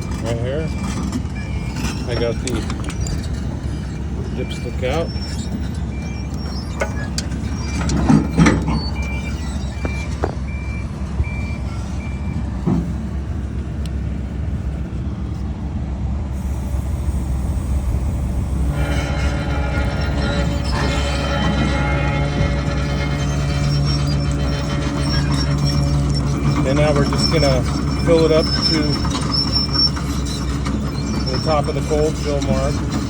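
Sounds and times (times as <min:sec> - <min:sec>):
backup alarm beeping: 0:00.0 - 0:13.1, 0:16.4 - 0:32.2
low engine drone: 0:00.0 - 0:33.0
rhythmic mechanical hum: 0:00.0 - 0:33.0
metal knocks: 0:06.8 - 0:11.2.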